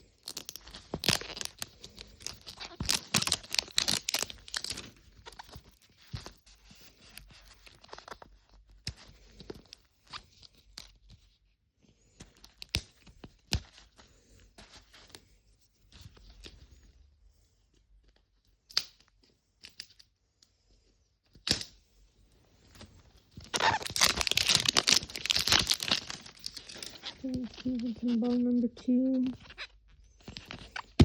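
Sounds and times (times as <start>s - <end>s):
plastic wrapping crinkling: 0.0s - 6.4s, 22.6s - 31.0s.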